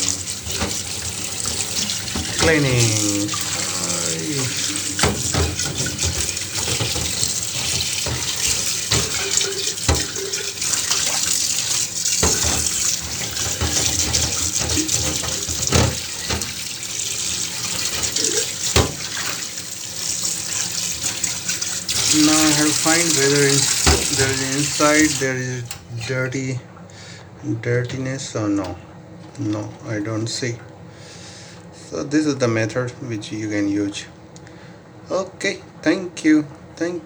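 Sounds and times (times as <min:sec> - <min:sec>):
teapot knocking against sink: 0:00.0 - 0:25.2
tap water running into sink: 0:00.0 - 0:26.3.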